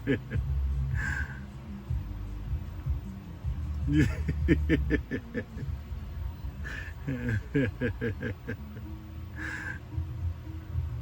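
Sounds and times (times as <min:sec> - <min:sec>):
person laughing in quick pulses: 0:03.8 - 0:05.7.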